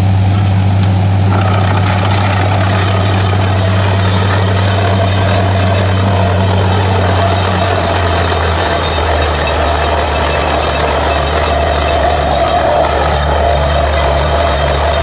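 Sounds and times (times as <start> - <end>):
drilling rig engine droning: 0.0 - 15.0.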